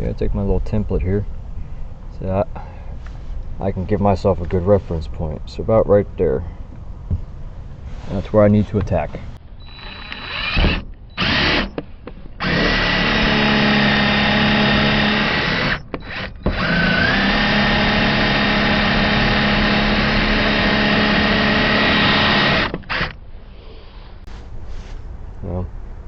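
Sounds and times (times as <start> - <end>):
power drill boring into lock: 9.6 - 11.8, 12.4 - 23.2.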